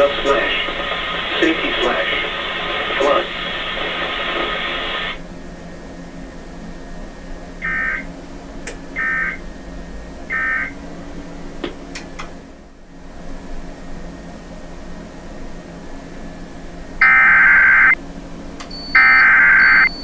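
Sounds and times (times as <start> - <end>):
loud rush of noise: 0.0 - 5.2
buzzy digital tone bursts: 7.6 - 8.0, 17.0 - 18.0, 19.0 - 20.0.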